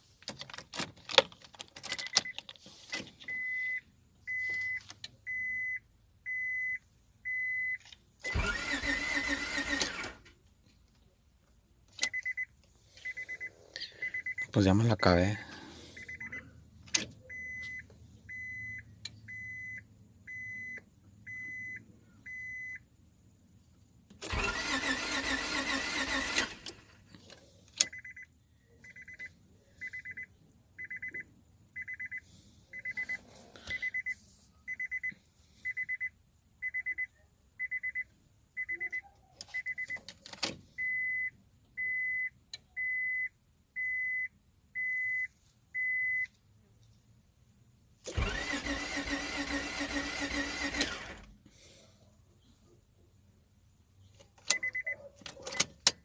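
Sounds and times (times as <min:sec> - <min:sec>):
car warning chime beeping: 0:01.9 - 0:09.8, 0:12.0 - 0:16.6, 0:17.2 - 0:22.9, 0:27.8 - 0:40.1, 0:40.8 - 0:46.4, 0:54.5 - 0:55.7.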